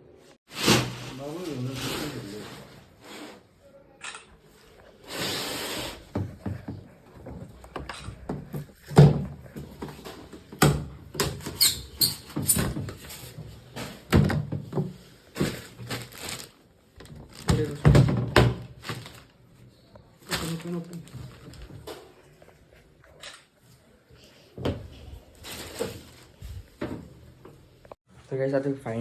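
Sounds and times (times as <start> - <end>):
knocks and thumps of handling: 6.1 - 11.6.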